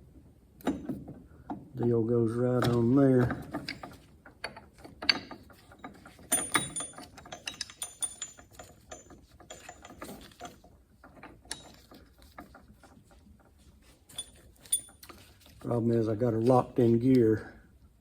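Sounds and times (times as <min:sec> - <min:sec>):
metal parts clinking: 0:05.0 - 0:10.6, 0:14.1 - 0:15.7.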